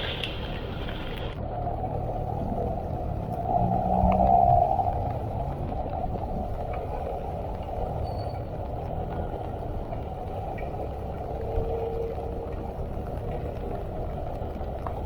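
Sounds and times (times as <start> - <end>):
constant rushing noise: 0.0 - 15.0
engine running steadily: 0.0 - 15.0.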